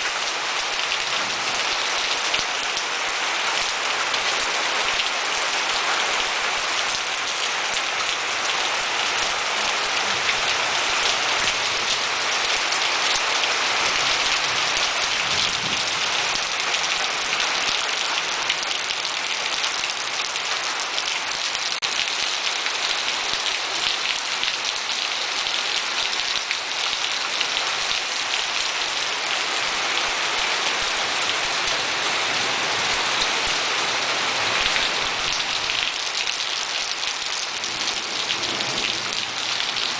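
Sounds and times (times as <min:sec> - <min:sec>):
heavy rain pattering: 0:00.0 - 0:39.9.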